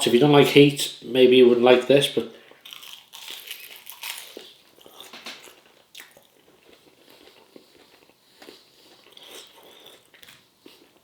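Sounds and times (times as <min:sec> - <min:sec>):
person chewing crispy chicken: 0:02.5 - 0:11.0.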